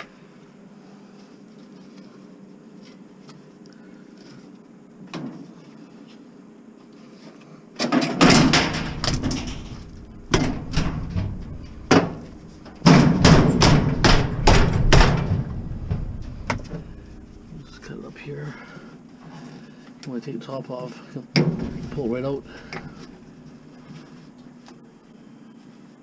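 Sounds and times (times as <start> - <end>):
metal scrap banging and clattering: 7.9 - 17.8, 21.4 - 23.2
knocking on metal: 8.2 - 17.4.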